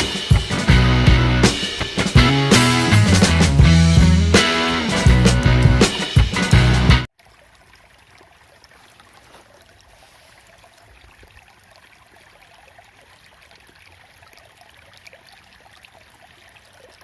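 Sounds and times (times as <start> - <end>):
water trickling in ditch: 7.1 - 17.0.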